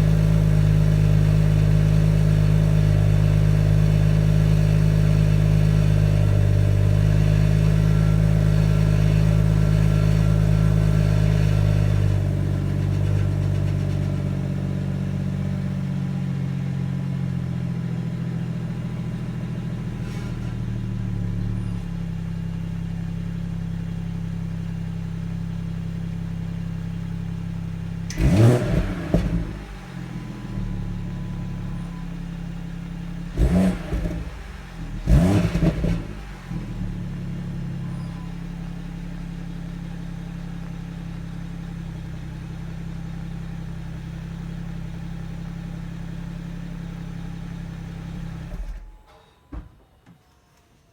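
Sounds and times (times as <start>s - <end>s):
car engine idling: 0.0s - 20.0s, 20.6s - 49.0s
car engine revving: 28.1s - 48.8s.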